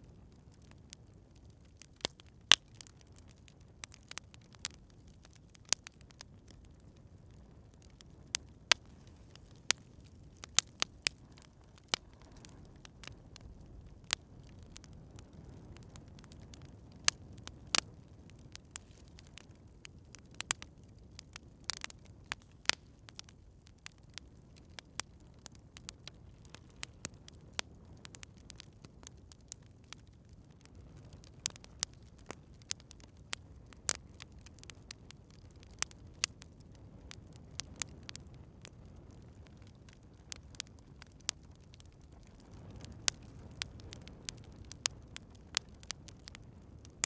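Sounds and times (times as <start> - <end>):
low burning fire: 0.0 - 47.0
campfire pops and snaps: 0.1 - 47.0.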